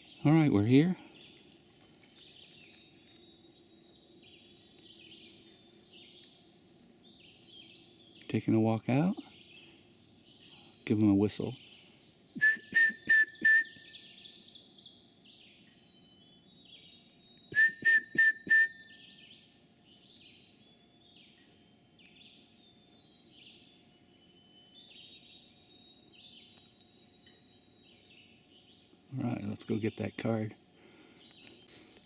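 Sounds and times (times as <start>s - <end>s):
faint birds chirping: 0.0s - 32.0s
whistle short loud blasts: 17.6s - 18.7s.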